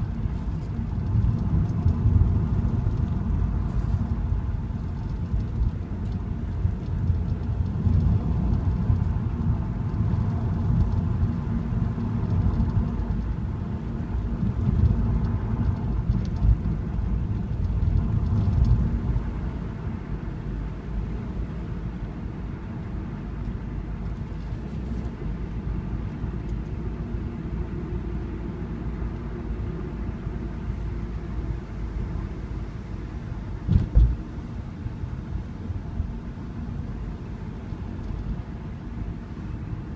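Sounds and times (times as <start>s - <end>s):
car engine and road noise: 0.0s - 39.9s
thump: 33.7s - 34.2s.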